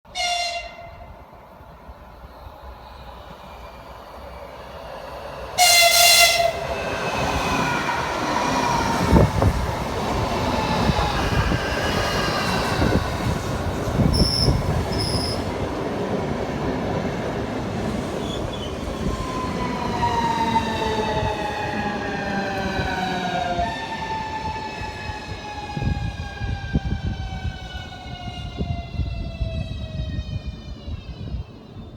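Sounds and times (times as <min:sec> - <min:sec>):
train horn blast: 0:00.1 - 0:01.2, 0:05.6 - 0:06.7
train passing with rumbling: 0:00.1 - 0:31.9
train whining tones: 0:02.1 - 0:16.4, 0:17.3 - 0:31.9.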